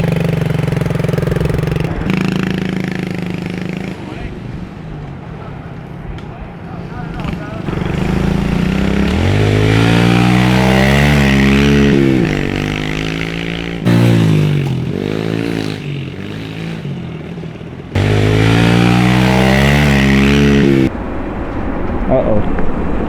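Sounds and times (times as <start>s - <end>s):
dirt bike engine revving: 7.2s - 20.9s.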